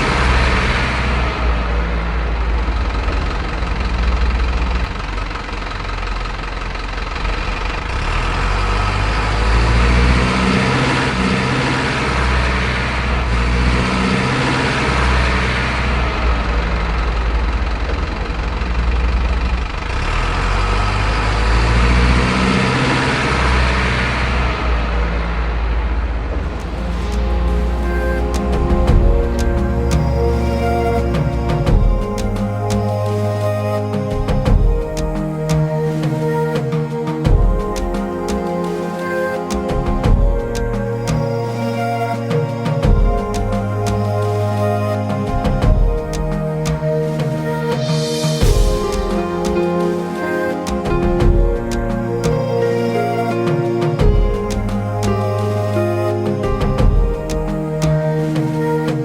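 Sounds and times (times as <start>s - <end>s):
truck diesel engine idling: 0.0s - 38.8s
music with percussive beat: 26.5s - 59.0s.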